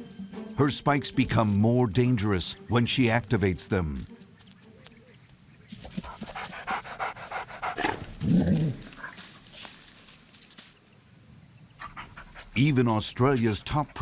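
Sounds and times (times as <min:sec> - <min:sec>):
dog sniffing: 0:05.7 - 0:09.1
dog panting: 0:05.8 - 0:08.2, 0:11.8 - 0:12.6
low dog growl: 0:07.6 - 0:09.1.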